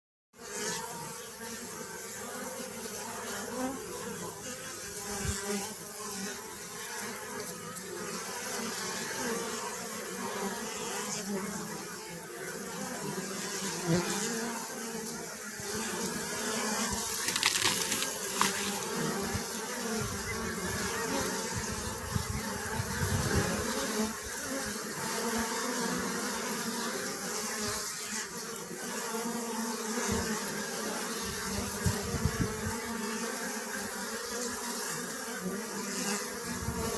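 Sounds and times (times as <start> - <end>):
bees buzzing: 0.4 - 36.9.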